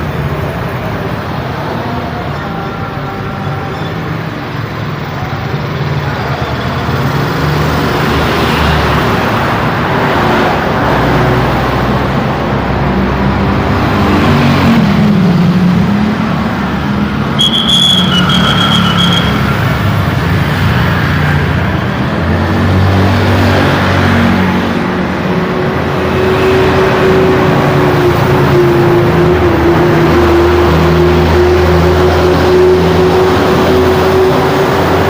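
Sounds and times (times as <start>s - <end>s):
heavy road traffic: 0.0s - 35.0s
high-pitched squeal: 17.3s - 21.8s.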